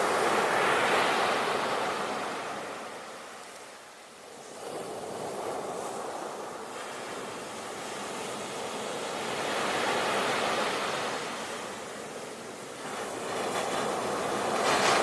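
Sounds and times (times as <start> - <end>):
surf rushing onto shore: 12.7 - 15.0.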